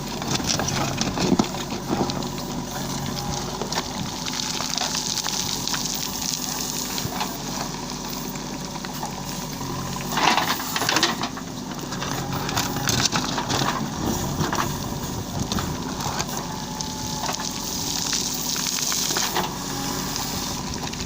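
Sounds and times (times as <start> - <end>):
clanks and crunching knocks: 0.0 - 4.2, 10.0 - 16.4
diesel engine running: 0.0 - 21.0
hiss: 17.3 - 20.6.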